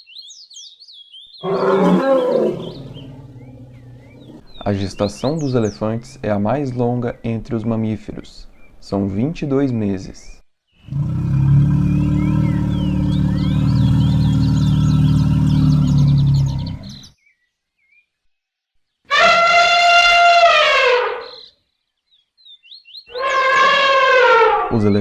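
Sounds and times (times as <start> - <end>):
small birds chirping: 0.0 - 19.1, 21.1 - 25.0
elephant trumpeting: 1.4 - 4.6, 10.9 - 17.0, 19.1 - 21.5, 23.1 - 24.8
elephant rumbling call: 1.4 - 4.7, 10.9 - 17.1, 19.1 - 21.4, 23.1 - 24.8.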